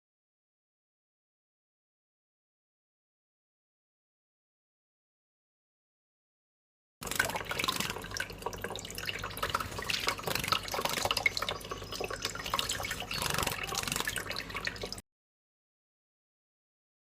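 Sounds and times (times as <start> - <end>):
water splashing and dripping: 7.0 - 15.0.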